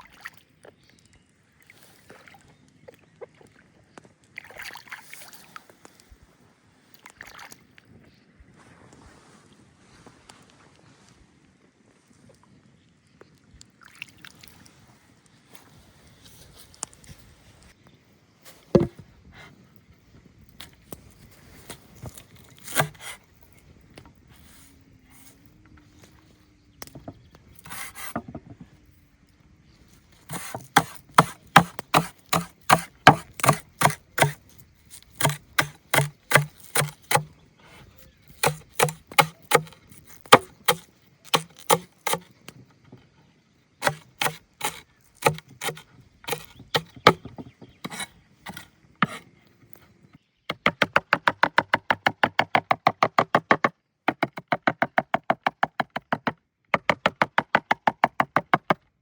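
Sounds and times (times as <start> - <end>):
chopping strikes on wood: 18.8 - 19.0, 22.7 - 23.2, 30.3 - 37.3, 38.4 - 42.3, 43.8 - 49.2.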